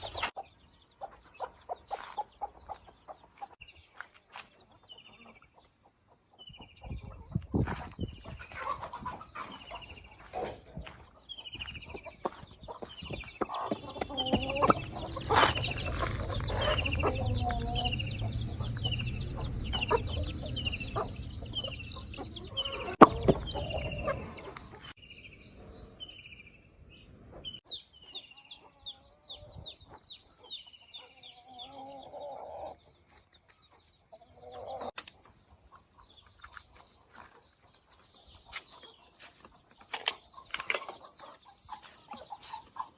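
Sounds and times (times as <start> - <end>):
chickens clucking: 0.0 - 25.9, 27.0 - 42.9
chicks peeping: 0.0 - 42.9
low rumble: 14.5 - 24.5.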